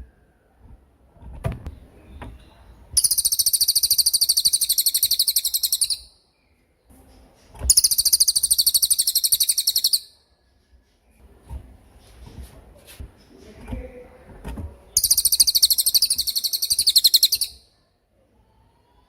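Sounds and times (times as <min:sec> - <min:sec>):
songbird rapid trills: 0:03.0 - 0:06.1, 0:07.7 - 0:10.1, 0:15.0 - 0:17.6.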